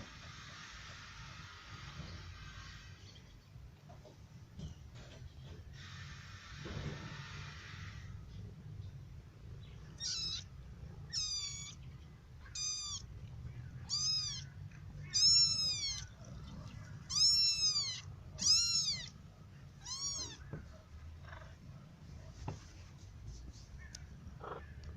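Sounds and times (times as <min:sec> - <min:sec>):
kitten mewing: 0:09.9 - 0:11.8, 0:12.4 - 0:13.1, 0:13.8 - 0:20.5.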